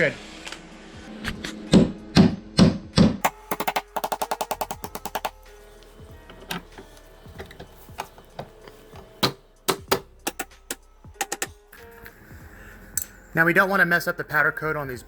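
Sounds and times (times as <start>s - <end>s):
background music: 0.0s - 15.0s
fast sharp clicks: 3.2s - 5.5s
hardware and tools clicking: 3.2s - 12.1s.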